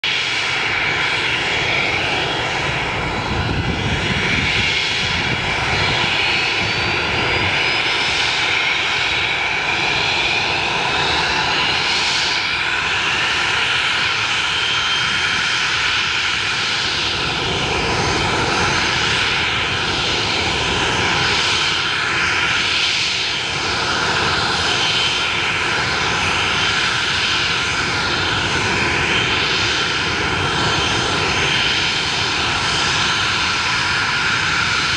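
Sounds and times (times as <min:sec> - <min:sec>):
jet engines roaring: 0:00.0 - 0:34.9.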